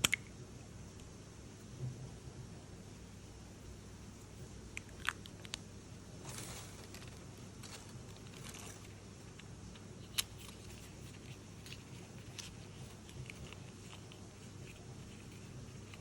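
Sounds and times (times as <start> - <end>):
low steady hum: 0.0 - 16.0
packaging rustling: 6.2 - 9.0.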